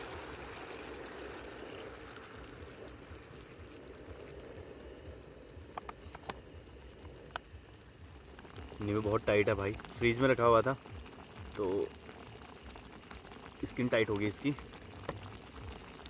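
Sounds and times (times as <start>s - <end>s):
gravy simmering in a pan: 0.0s - 16.0s.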